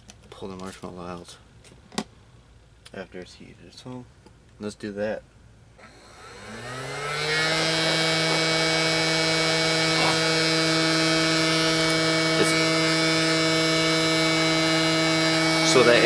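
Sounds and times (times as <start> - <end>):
electric blower fan whine: 5.8 - 16.0.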